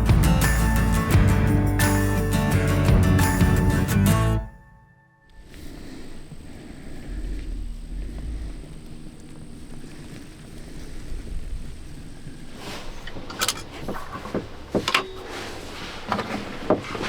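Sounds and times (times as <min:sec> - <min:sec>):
low steady rumble: 0:05.3 - 0:14.8.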